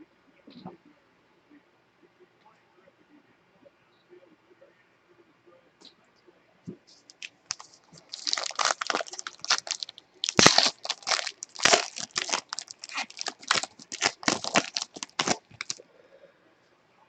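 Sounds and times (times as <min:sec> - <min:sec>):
wrapper tearing and crinkling: 0:07.1 - 0:15.8.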